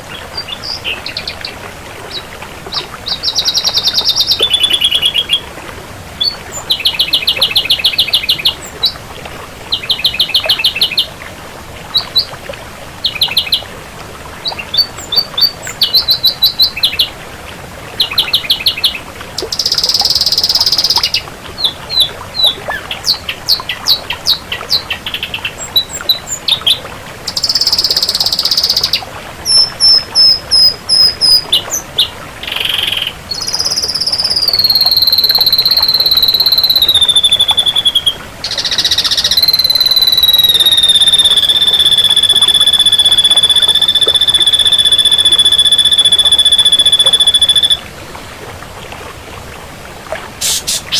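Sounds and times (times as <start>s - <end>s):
bird singing trills and whistles: 3.1s - 5.4s, 6.2s - 9.0s, 9.7s - 11.1s, 13.0s - 13.6s, 14.5s - 17.1s, 18.0s - 47.8s, 50.4s - 50.9s
harsh rasping bird calls: 22.8s - 47.8s, 50.4s - 50.9s.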